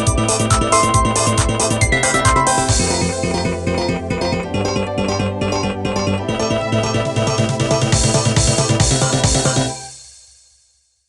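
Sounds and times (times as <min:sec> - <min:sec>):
electronic ringtone tune: 0:00.1 - 0:06.2.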